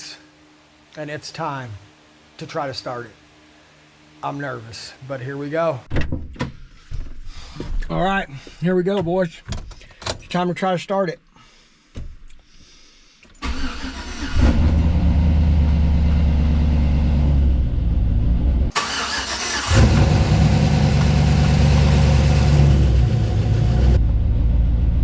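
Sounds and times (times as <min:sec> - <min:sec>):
car engine running: 0:14.7 - 0:24.3
starter motor cranking: 0:18.7 - 0:24.0.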